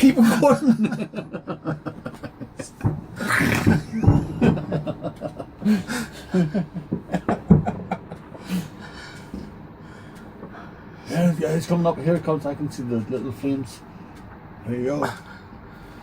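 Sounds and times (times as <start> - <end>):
man laughing in breathy bursts: 0.0 - 9.4
firework bangs: 2.4 - 8.5.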